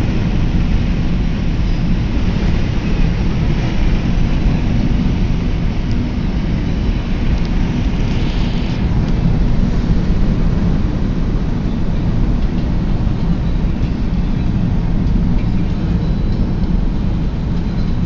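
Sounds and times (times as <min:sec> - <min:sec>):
car road and engine rumble: 0:00.0 - 0:18.0
rain hiss: 0:01.9 - 0:11.4.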